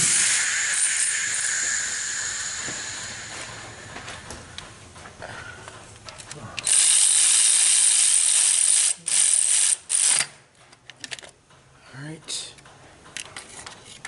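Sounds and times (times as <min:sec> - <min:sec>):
power ratchet running bolts: 0:00.0 - 0:03.9, 0:06.6 - 0:10.3.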